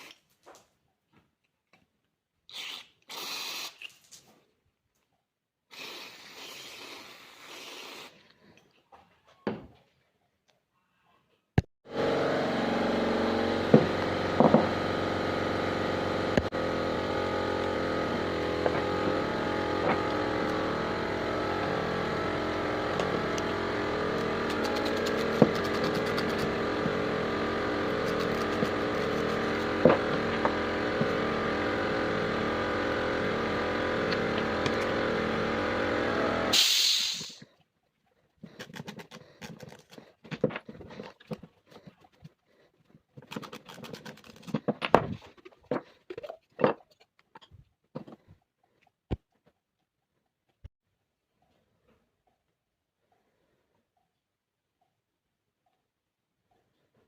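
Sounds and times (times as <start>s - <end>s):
car engine idling: 12.8s - 36.5s.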